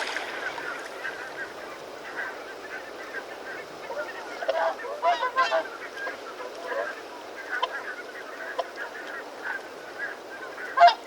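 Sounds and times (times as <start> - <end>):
swans calling: 0.0 - 3.0.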